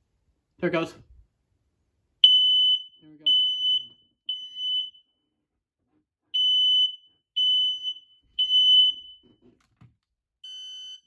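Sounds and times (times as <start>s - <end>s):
smoke alarm beeping: 2.2s - 5.2s, 6.4s - 9.3s, 10.4s - 11.0s.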